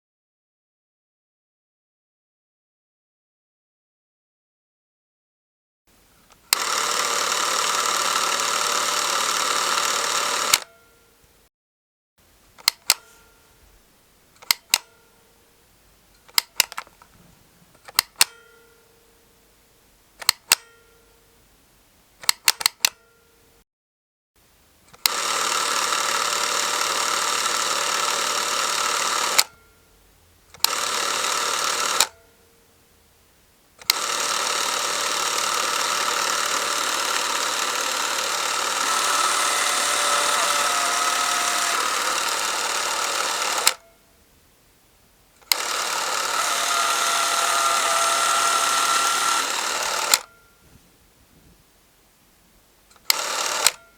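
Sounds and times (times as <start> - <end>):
film camera drive whirr: 6.2 - 10.7, 24.9 - 29.8, 30.5 - 32.2, 33.8 - 44.0, 45.4 - 50.4, 53.0 - 53.9
camera control clicks: 6.3 - 10.7, 12.6 - 13.1, 14.4 - 14.9, 16.2 - 17.1, 17.8 - 18.4, 20.2 - 20.7, 22.2 - 23.0, 24.9 - 29.6, 30.6 - 32.2, 33.8 - 43.9, 45.4 - 50.4, 53.0 - 53.9.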